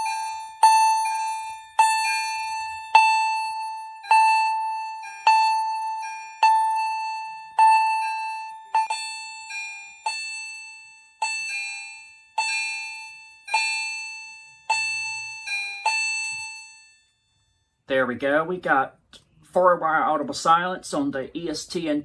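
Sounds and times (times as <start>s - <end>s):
fire alarm chime strikes: 0.0s - 17.6s.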